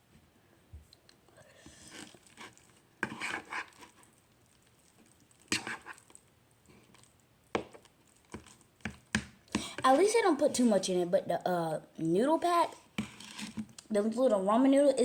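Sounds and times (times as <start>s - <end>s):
utensil scraping a dish: 1.8s - 3.9s, 5.5s - 6.0s, 13.0s - 13.6s.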